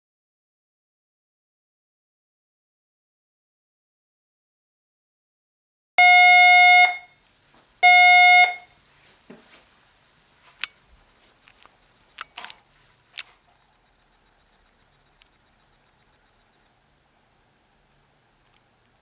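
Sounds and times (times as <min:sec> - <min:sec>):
fire alarm buzzing tones: 0:06.0 - 0:07.2, 0:07.8 - 0:08.8.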